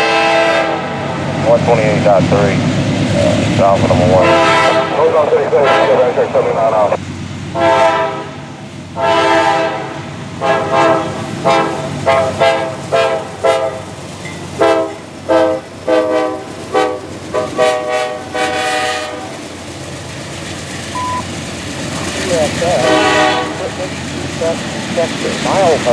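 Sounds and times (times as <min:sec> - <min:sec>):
locomotive air horn blasts: 0:00.0 - 0:01.0, 0:04.2 - 0:05.0, 0:05.6 - 0:06.1, 0:07.5 - 0:08.4, 0:09.0 - 0:13.9, 0:14.6 - 0:19.4, 0:22.8 - 0:23.8
train rumbling: 0:00.0 - 0:25.9.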